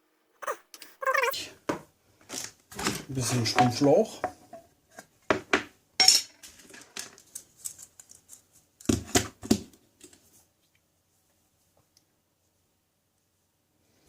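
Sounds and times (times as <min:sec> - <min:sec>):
clicks and rustling of small parts: 0:06.4 - 0:08.9.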